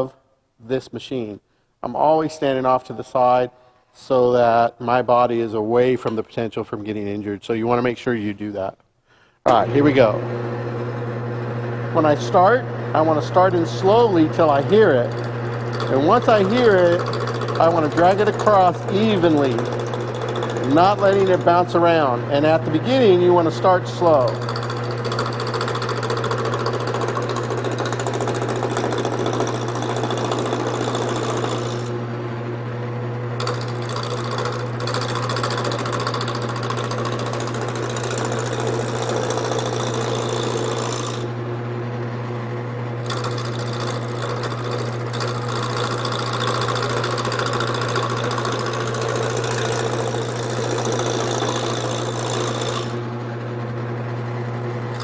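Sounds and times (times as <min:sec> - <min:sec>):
lathe motor hum: 0:09.5 - 0:55.0
gouge scraping spinning wood: 0:12.0 - 0:32.2, 0:33.4 - 0:41.3, 0:43.0 - 0:53.2.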